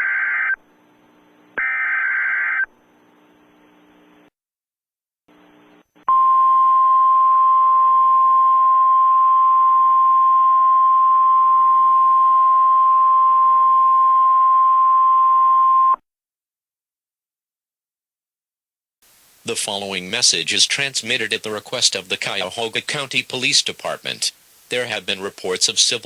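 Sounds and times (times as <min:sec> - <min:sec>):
faint hiss: 0:19.0 - 0:26.0.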